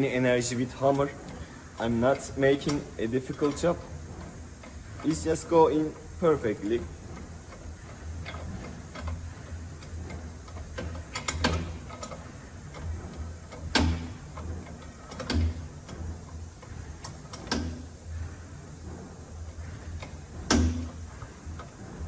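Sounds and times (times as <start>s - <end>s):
low steady hum: 0.0s - 22.0s
wrench clicking on metal bolt: 13.5s - 15.9s, 20.0s - 21.0s.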